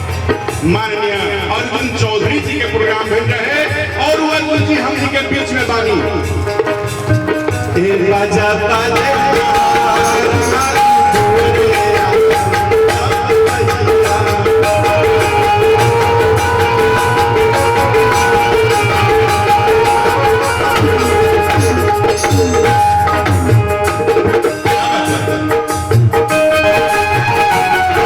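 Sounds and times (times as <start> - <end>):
hand drums beating: 0.0 - 28.0
melody instrument sustained notes: 8.8 - 24.2.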